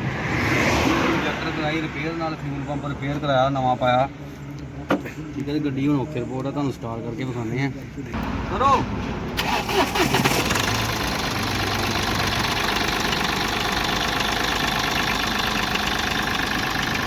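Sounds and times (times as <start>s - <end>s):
diesel engine starting and idling: 8.2s - 17.0s.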